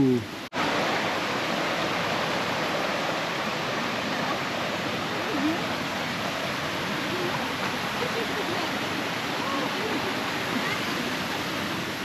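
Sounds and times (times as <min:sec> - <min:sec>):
stream and waterfall rushing: 0:00.0 - 0:12.0.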